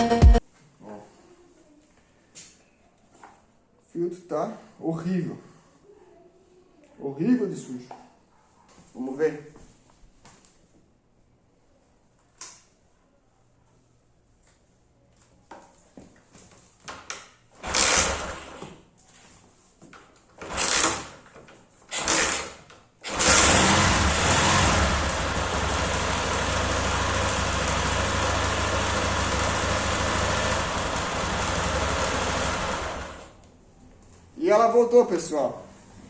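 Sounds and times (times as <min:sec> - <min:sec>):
motorcycle engine starting and running: 0:21.9 - 0:33.4.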